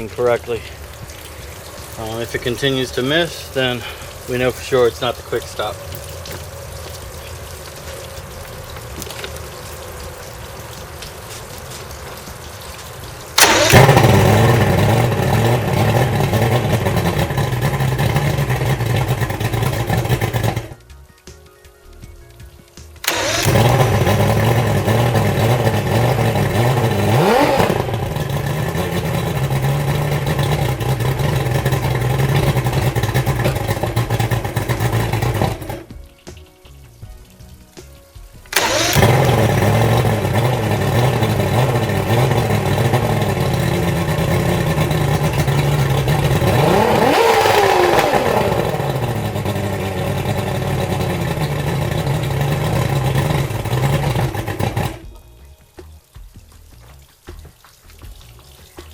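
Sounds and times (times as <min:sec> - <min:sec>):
outboard engine running and revving: 0:13.4 - 0:20.8, 0:23.0 - 0:35.9, 0:38.5 - 0:55.1.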